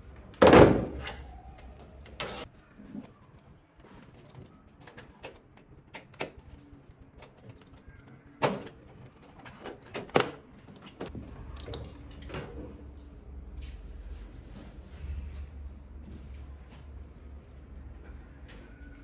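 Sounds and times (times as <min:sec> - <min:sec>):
low steady hum: 0:11.1 - 0:19.0.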